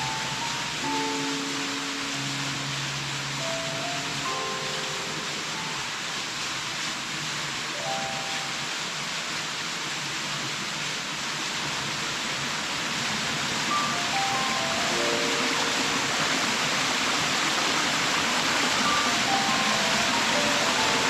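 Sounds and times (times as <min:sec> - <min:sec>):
faint mallet-like music notes: 0:00.0 - 0:06.6, 0:07.7 - 0:08.9, 0:13.7 - 0:17.8, 0:18.5 - 0:21.0
waterfall pouring: 0:00.0 - 0:21.0.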